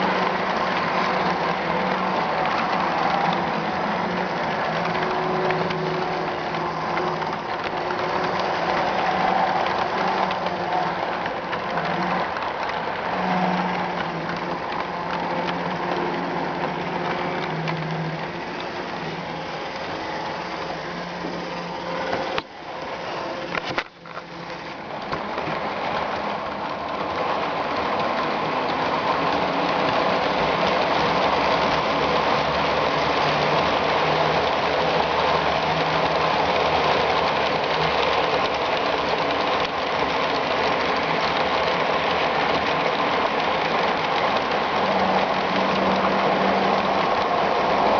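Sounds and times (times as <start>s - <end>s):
model trains whirring on track: 0.0s - 47.9s.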